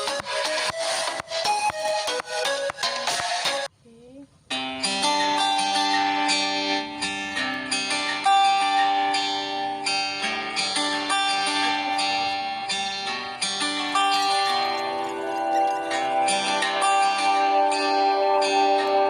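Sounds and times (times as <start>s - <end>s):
plucked string instrumental music: 4.5s - 19.0s.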